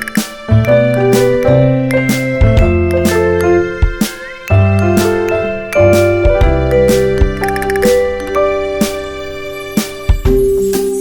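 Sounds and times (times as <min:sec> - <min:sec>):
gentle tune over soft beat: 0:00.0 - 0:11.0
jingling bell-like percussion: 0:00.7 - 0:09.4.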